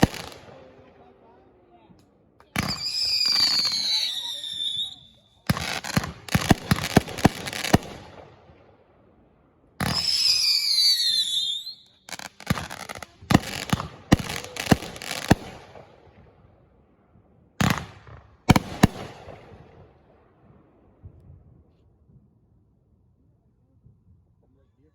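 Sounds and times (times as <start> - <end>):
fireworks bangs and pops: 0.0 - 0.7, 1.9 - 8.6, 9.8 - 16.3, 17.6 - 19.7
whistling firework screaming: 2.6 - 5.8, 9.9 - 12.0.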